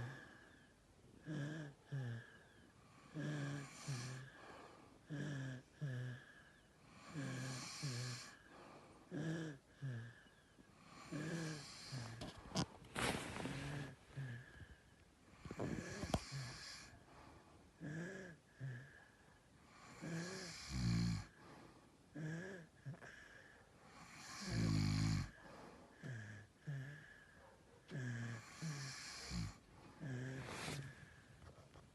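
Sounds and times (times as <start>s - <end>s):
people snoring: 7.0s - 8.4s, 10.9s - 12.2s, 15.4s - 16.9s, 19.8s - 21.4s, 24.0s - 25.4s, 27.9s - 31.0s.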